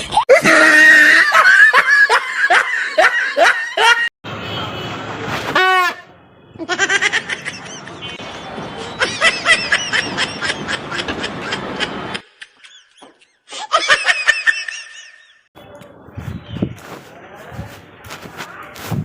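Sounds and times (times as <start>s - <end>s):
high-pitched laughter: 0.0s - 4.1s, 6.6s - 8.1s.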